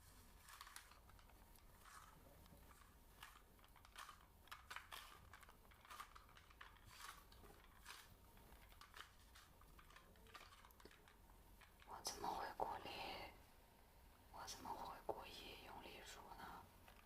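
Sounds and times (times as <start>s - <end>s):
ear-cleaning scratching and clicking: 0.0s - 12.9s.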